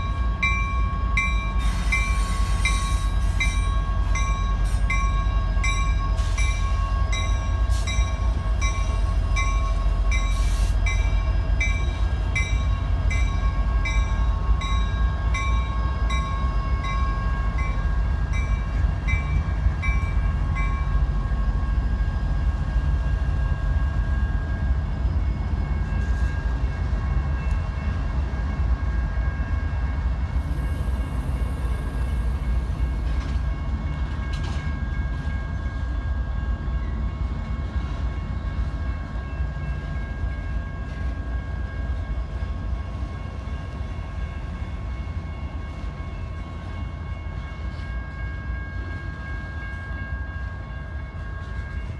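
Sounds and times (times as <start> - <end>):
train rumbling past: 0.0 - 51.9.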